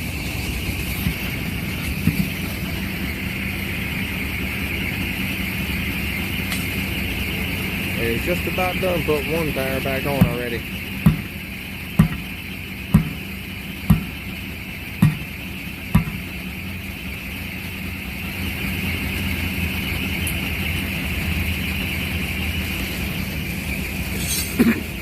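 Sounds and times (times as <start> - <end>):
engine humming: 0.0 - 25.0
hammer blows on tire: 9.1 - 14.3, 15.0 - 16.3.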